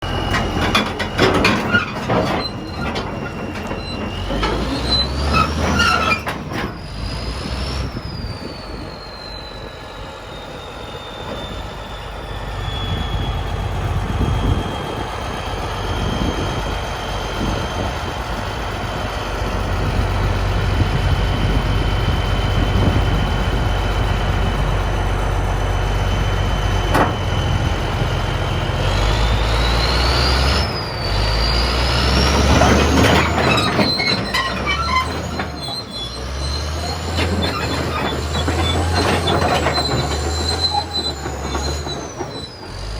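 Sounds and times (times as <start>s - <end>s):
bulldozer diesel engine drone: 0.0s - 42.9s
metallic clanking: 0.1s - 7.0s, 32.3s - 42.8s.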